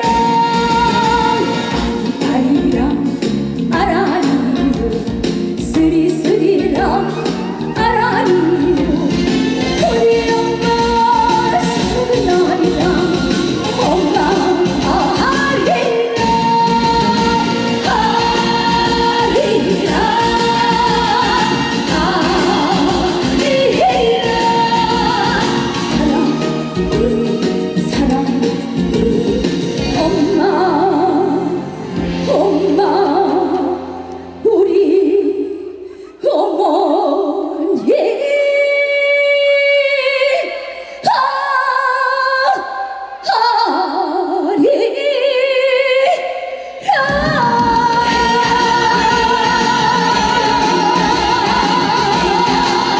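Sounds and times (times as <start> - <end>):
drums and bass: 0.0 - 30.6, 47.1 - 52.9
backing music: 0.0 - 34.7, 47.1 - 52.9
woman singing with vibrato: 0.0 - 52.9.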